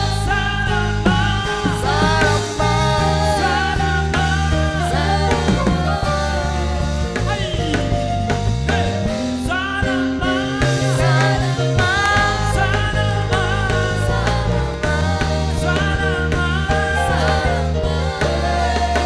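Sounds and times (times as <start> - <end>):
person singing: 0.0 - 8.1
band playing worship song: 0.0 - 19.0
bass guitar: 0.0 - 19.0
drums: 0.0 - 19.0.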